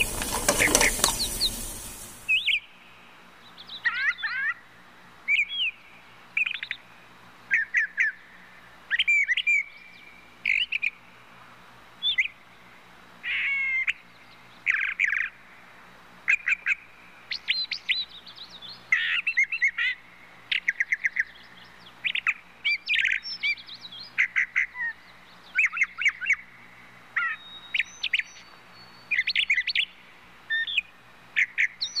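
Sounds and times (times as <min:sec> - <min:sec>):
birds chirping and twittering: 0:00.0 - 0:02.6, 0:27.2 - 0:32.0.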